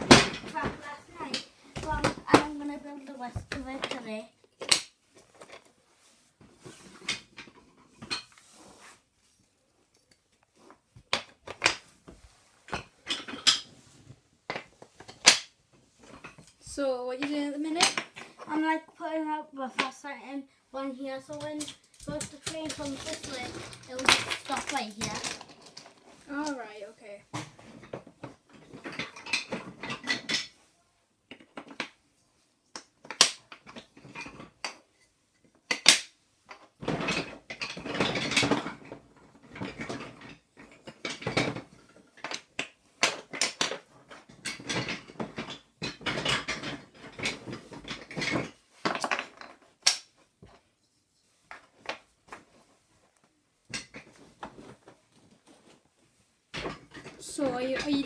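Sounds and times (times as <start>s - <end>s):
toy train track pieces clattering: 21.2s - 26.7s, 44.4s - 50.1s.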